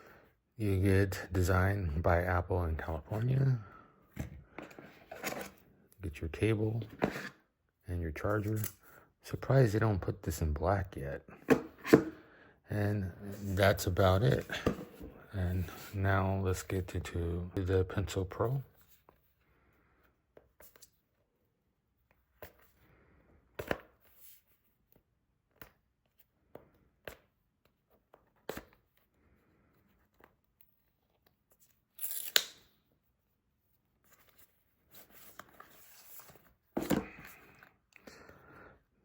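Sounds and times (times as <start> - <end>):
paper seal tearing: 32.0 - 32.6.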